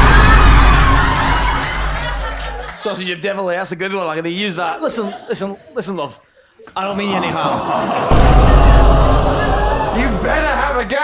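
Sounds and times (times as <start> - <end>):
crowd cheering and shouting: 0.0 - 2.8, 7.5 - 11.0.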